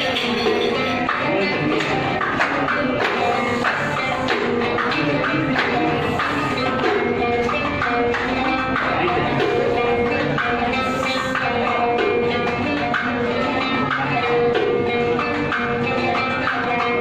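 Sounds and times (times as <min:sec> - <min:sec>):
hand percussion: 0:00.0 - 0:17.0
plucked qanun melody: 0:00.0 - 0:17.0.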